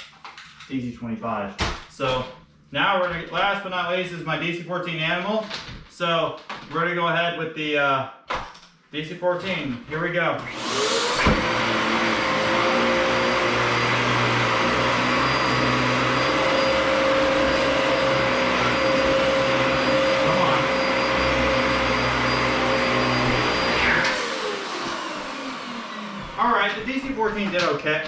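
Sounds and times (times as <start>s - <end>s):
vacuum cleaner motor whine: 10.4s - 27.7s.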